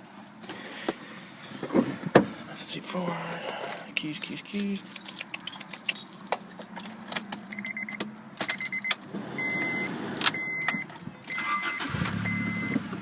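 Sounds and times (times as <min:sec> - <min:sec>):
car keys jangling: 0:03.5 - 0:09.2, 0:10.2 - 0:12.3
dashboard warning chime beeping: 0:07.5 - 0:12.8
car engine starting: 0:08.8 - 0:13.0
starter cranking car engine: 0:11.3 - 0:13.0.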